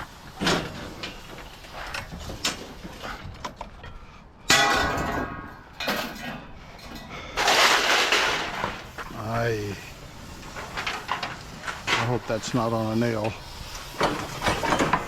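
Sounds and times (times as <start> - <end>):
loud metallic clatter: 7.4 - 9.0.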